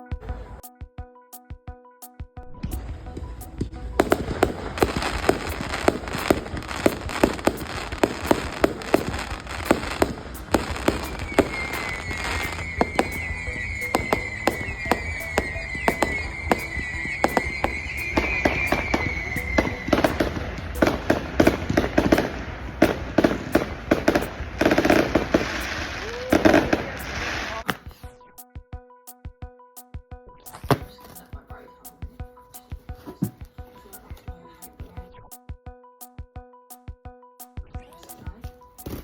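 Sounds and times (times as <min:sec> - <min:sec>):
fireworks popping and crackling: 0:04.0 - 0:27.9
wavering firework whistle: 0:04.4 - 0:22.4, 0:23.5 - 0:27.6.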